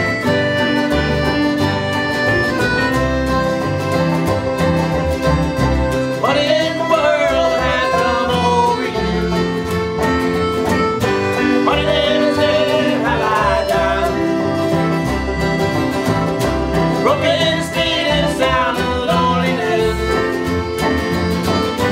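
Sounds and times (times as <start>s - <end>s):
banjo: 0.0s - 21.9s
sliding melody line: 0.0s - 21.9s
strummed guitar: 0.0s - 21.9s.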